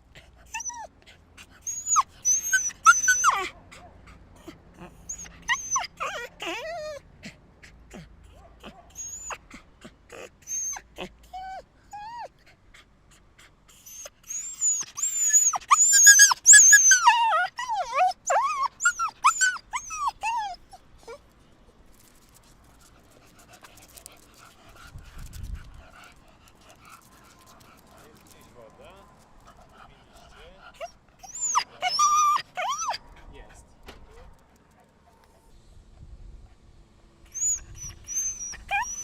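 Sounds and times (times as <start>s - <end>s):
dog yelping and whimpering: 0.5s - 7.1s, 7.9s - 12.3s, 13.8s - 21.2s, 30.7s - 33.1s, 37.3s - 39.0s.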